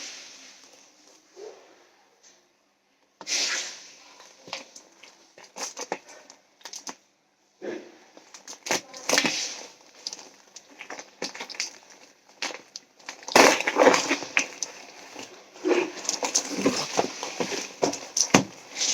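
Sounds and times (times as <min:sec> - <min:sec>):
packaging crinkling and tearing: 0:08.3 - 0:18.9.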